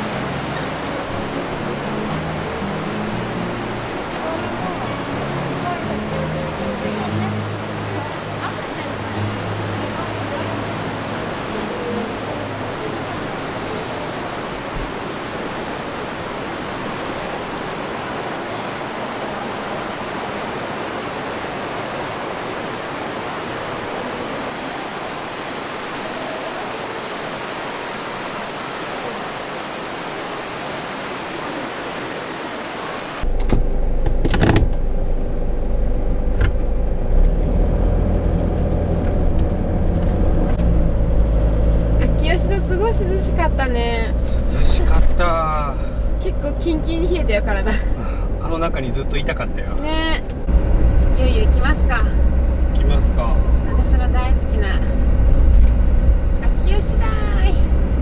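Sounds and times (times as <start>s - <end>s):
car engine rumble from inside: 0.0s - 14.9s, 33.2s - 58.0s
steady rushing noise: 0.0s - 33.3s, 38.2s - 58.0s.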